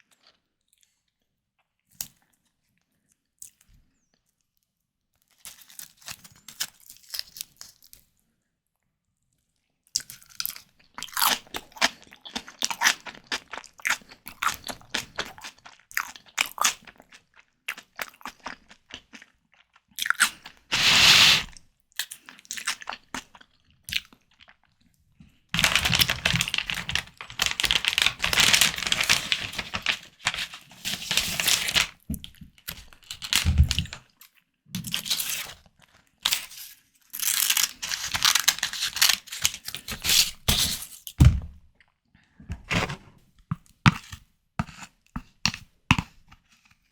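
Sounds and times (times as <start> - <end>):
chewing and biting prawns: 10.0 - 21.4.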